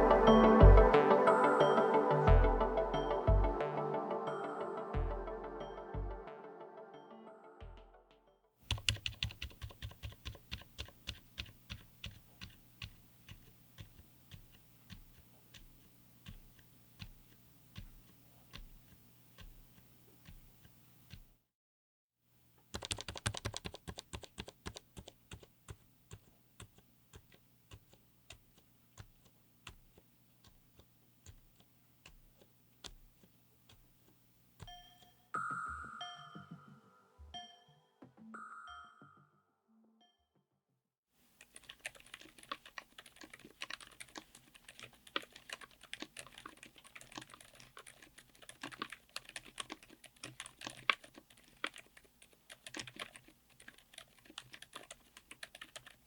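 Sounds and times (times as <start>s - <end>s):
soft muted keyboard typing: 8.7s - 21.4s, 22.6s - 35.2s, 41.4s - 56.0s.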